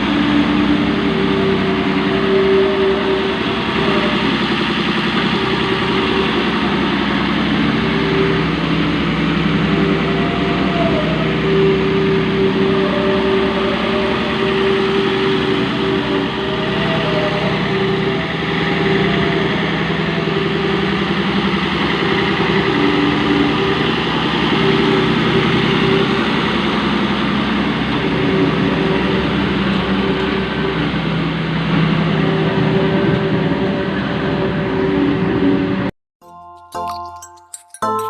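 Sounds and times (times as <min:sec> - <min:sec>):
road roller engine humming: 0:00.0 - 0:38.0.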